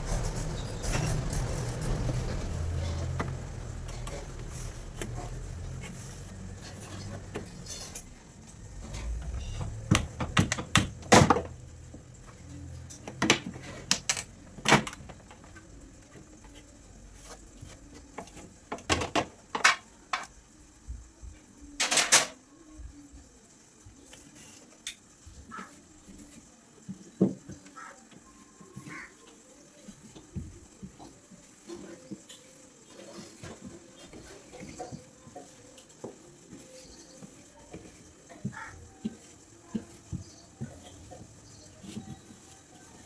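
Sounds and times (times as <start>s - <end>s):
containers and trays clinking: 21.8s - 22.4s.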